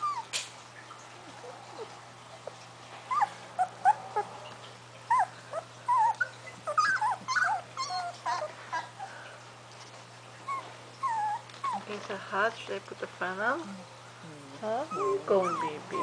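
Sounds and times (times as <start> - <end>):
puppies whimpering and squeaking: 0.0 - 0.5, 1.2 - 9.3, 10.3 - 12.0, 14.6 - 16.0.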